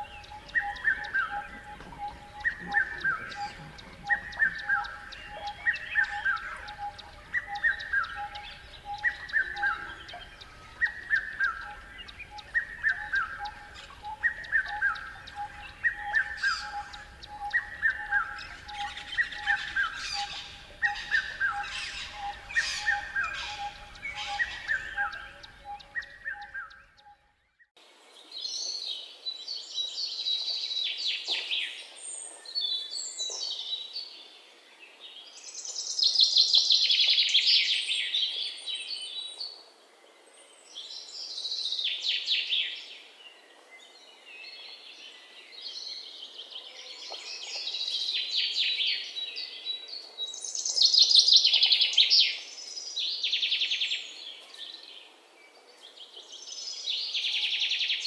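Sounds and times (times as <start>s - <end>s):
songbirds trilled chirps: 0.0s - 34.2s.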